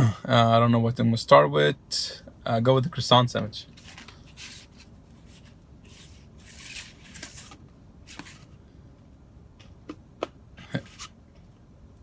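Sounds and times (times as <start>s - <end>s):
paper wrapper rustling and crinkling: 3.8s - 8.5s.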